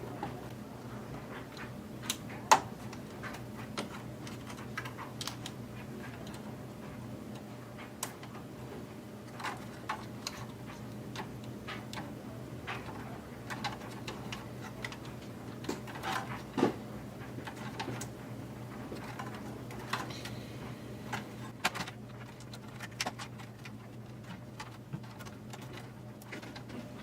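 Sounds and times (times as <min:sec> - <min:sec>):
steady low hum: 0:00.0 - 0:27.0
plastic and metal parts clicking: 0:21.1 - 0:27.0.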